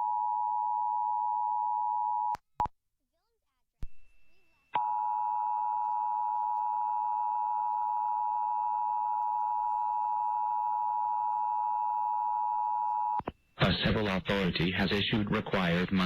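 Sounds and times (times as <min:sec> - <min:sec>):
two-tone alarm signal: 0:04.1 - 0:13.2.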